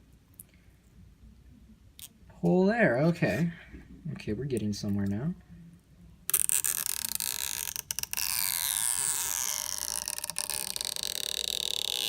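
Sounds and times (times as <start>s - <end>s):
adhesive strip creaking and rasping: 6.3s - 12.0s.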